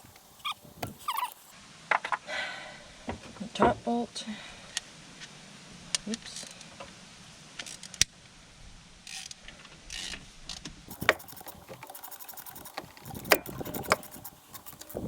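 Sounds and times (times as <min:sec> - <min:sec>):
fast light ticking: 0:10.9 - 0:15.0.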